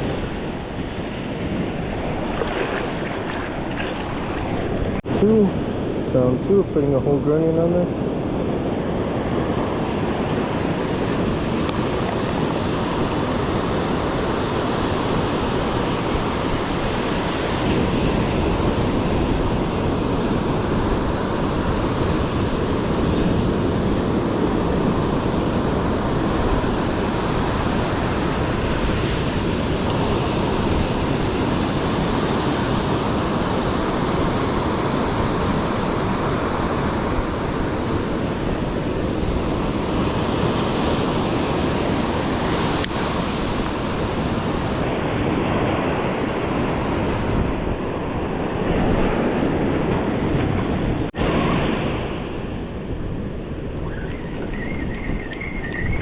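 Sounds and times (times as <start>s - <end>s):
ocean surf breaking on shore: 0.0s - 56.0s.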